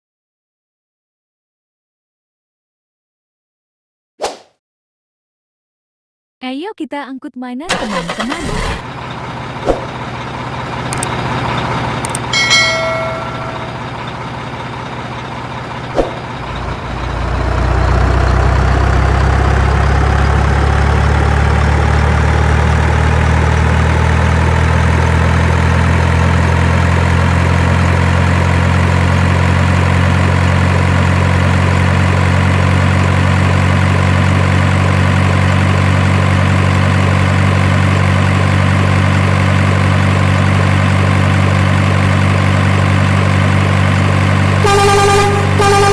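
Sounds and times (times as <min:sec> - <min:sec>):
truck engine idling: 0:07.7 - 0:45.9
clicks: 0:10.9 - 0:11.2, 0:12.0 - 0:12.3
short beep: 0:12.4 - 0:13.9, 0:44.6 - 0:45.9.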